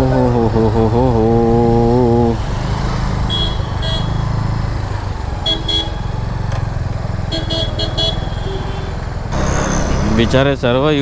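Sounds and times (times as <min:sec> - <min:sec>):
motorcycle engine and road rumble: 0:00.0 - 0:11.0
vehicle horn toots: 0:03.3 - 0:04.3, 0:05.4 - 0:06.2, 0:07.3 - 0:10.6.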